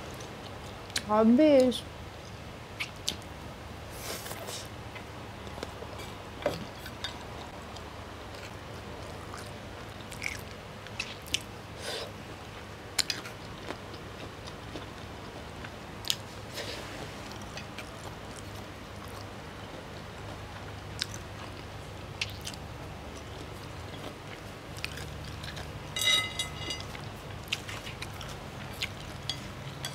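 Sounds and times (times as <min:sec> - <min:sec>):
steady low hum: 0:00.0 - 0:29.9
person chewing: 0:08.3 - 0:11.5, 0:13.0 - 0:15.0, 0:17.3 - 0:25.7.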